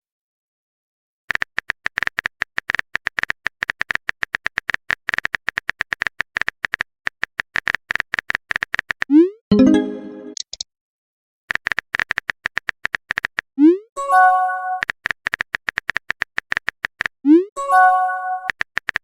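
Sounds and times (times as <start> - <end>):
phone keyboard typing clicks: 1.3 - 9.1, 11.5 - 13.4, 14.8 - 17.1, 18.4 - 19.0.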